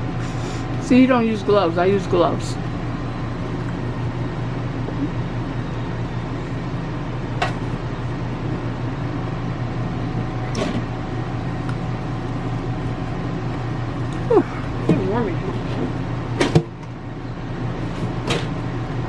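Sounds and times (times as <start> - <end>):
low mechanical hum: 0.0 - 19.0.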